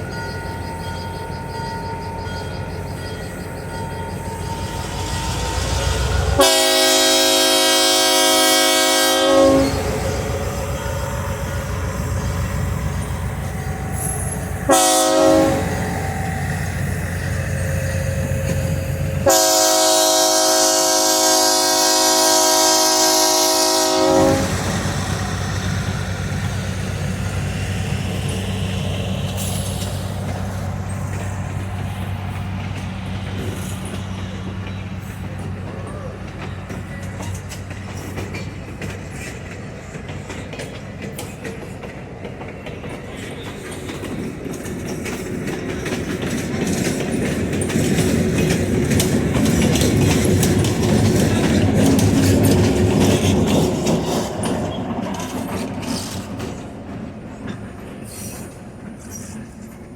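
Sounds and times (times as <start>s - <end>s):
train rumbling: 0.0s - 59.9s
train horn blasts: 4.6s - 11.3s, 13.6s - 16.7s, 19.2s - 25.3s.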